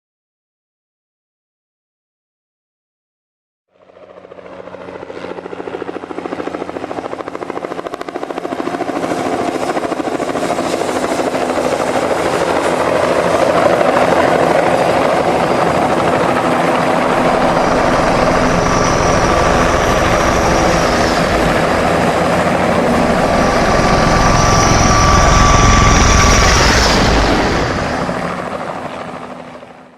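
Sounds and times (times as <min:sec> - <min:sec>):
helicopter engine drone: 0:03.7 - 0:29.9
helicopter rotor blades chopping: 0:03.8 - 0:29.8
high turbine whine: 0:07.9 - 0:29.5.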